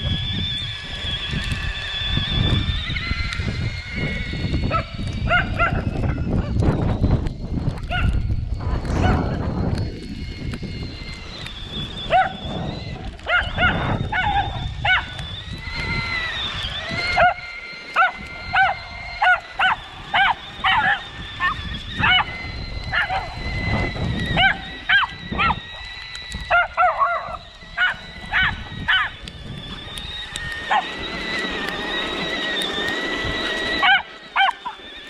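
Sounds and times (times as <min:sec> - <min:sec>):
electric motor whining: 0:00.0 - 0:35.0
dog barking: 0:04.7 - 0:05.8, 0:07.9 - 0:08.1, 0:12.1 - 0:12.3, 0:13.3 - 0:15.1, 0:18.0 - 0:21.0, 0:33.8 - 0:34.7.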